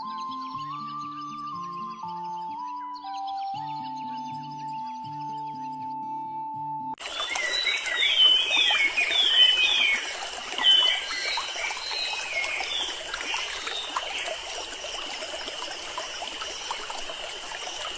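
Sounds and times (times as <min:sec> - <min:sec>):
songbirds chirping: 0:07.0 - 0:17.9
stream trickling: 0:07.0 - 0:17.9.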